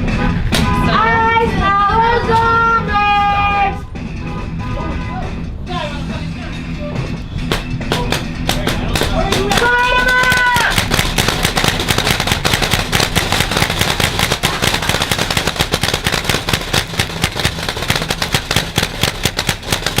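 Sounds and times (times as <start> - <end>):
paintball markers firing rapidly: 7.9 - 20.0.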